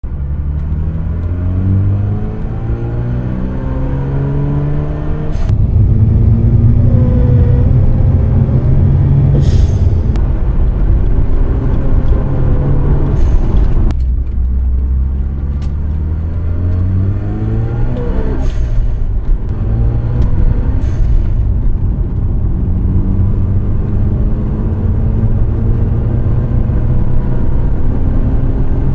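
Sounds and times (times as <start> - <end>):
rotary engine revving: 0.3 - 13.9, 14.8 - 21.6.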